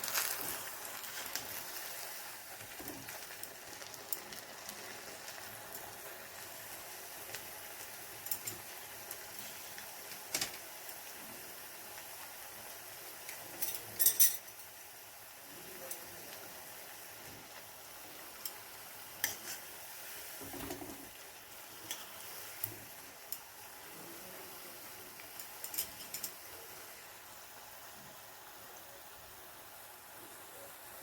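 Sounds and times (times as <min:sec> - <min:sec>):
faint steady hiss: 0:00.0 - 0:31.0
utensil clinking on cooking vessel: 0:13.3 - 0:14.8, 0:25.2 - 0:26.5.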